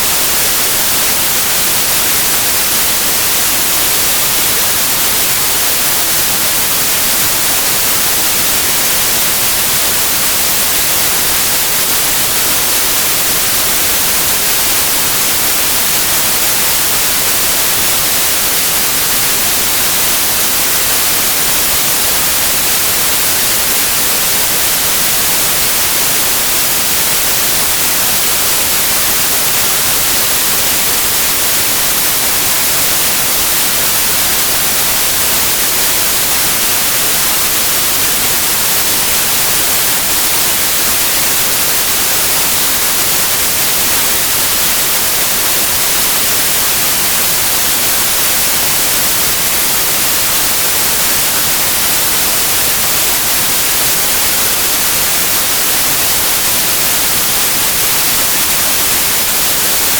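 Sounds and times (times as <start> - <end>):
steady white noise: 0.0 - 59.9.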